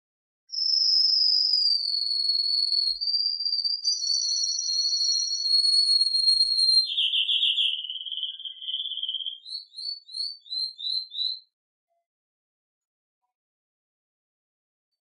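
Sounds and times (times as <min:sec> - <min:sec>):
canary singing: 0:00.5 - 0:11.5.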